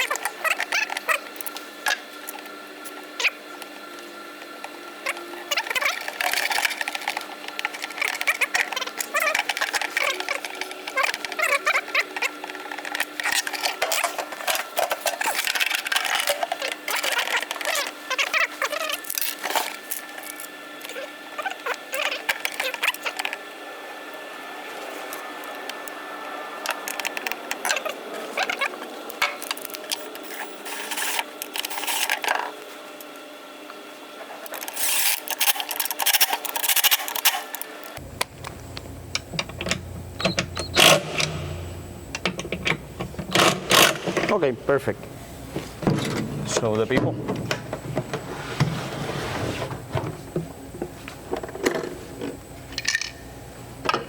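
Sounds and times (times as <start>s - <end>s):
metal parts rattling and scraping: 5.6s - 20.4s, 28.4s - 32.4s, 34.5s - 37.6s, 39.1s - 44.5s.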